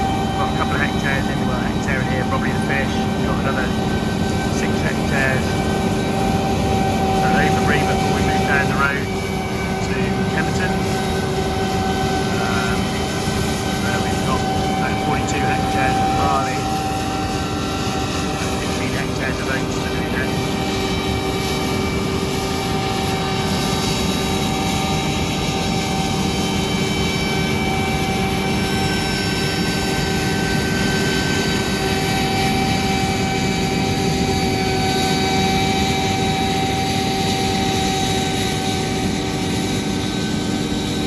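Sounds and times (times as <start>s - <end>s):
whining tones: 0.0s - 24.5s
diesel engine drone: 0.0s - 41.0s.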